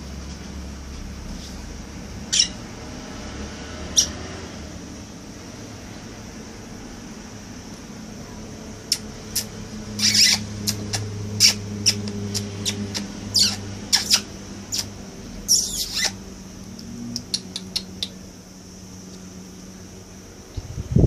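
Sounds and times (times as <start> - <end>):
steady low hum: 0.0 - 21.0
pet birds chirping: 2.2 - 2.8, 3.8 - 4.4, 8.8 - 18.4
bird squawks: 2.3 - 2.6, 9.3 - 14.9, 15.5 - 16.2.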